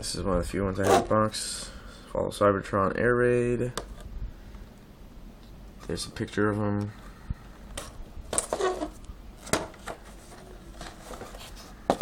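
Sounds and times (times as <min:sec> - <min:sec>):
cardboard rustling: 0:07.8 - 0:12.0.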